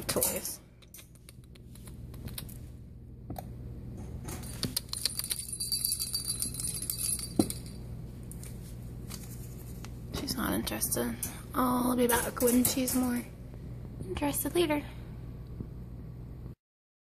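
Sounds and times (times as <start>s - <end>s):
small jingle bell ringing: 4.4s - 8.0s.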